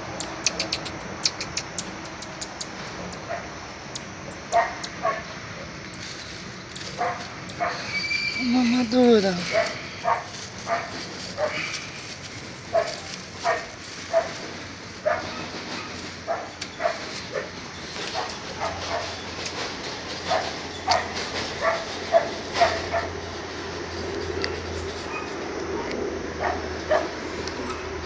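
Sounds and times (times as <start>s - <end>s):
dog barking: 4.5s - 5.3s, 7.0s - 7.9s, 9.4s - 11.7s, 12.7s - 15.4s, 16.3s - 19.1s, 20.3s - 23.1s, 25.1s - 27.8s.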